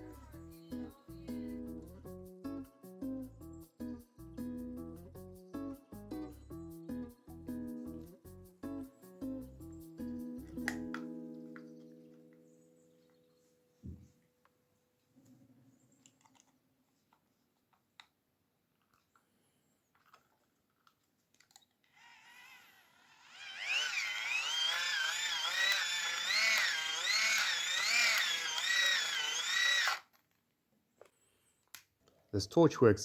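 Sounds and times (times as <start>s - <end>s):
faint handling clicks: 15.9s - 18.2s, 18.8s - 21.9s
hand-cranked generator whining: 22.1s - 30.0s.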